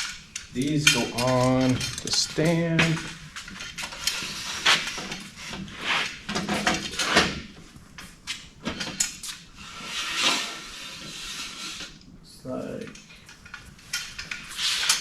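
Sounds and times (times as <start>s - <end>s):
metal hardware clinking and rattling: 0.0s - 4.3s.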